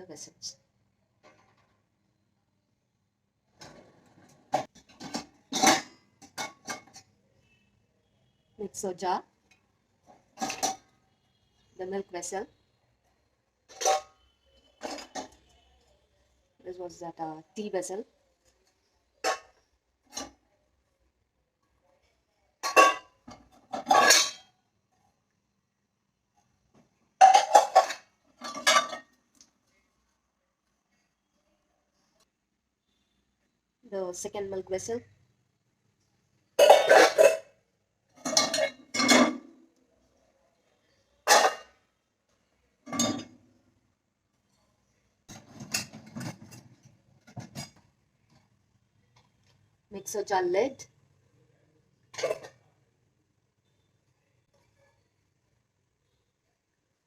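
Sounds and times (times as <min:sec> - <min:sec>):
pots clinking and clattering: 0:03.5 - 0:07.2, 0:09.5 - 0:11.0, 0:13.7 - 0:15.6, 0:18.5 - 0:20.4, 0:22.6 - 0:24.6, 0:27.2 - 0:29.2, 0:36.6 - 0:37.5, 0:38.2 - 0:39.6, 0:41.3 - 0:41.8, 0:42.8 - 0:43.5, 0:45.3 - 0:48.6, 0:52.1 - 0:52.7.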